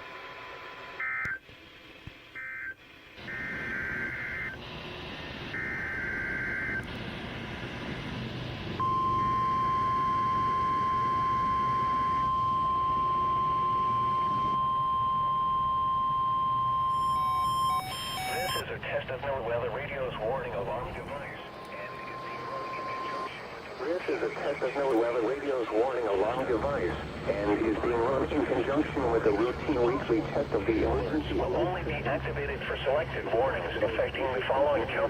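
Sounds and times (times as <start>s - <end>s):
steady warning alarm tone: 2.4s - 8.0s, 8.8s - 18.8s, 19.6s - 32.1s.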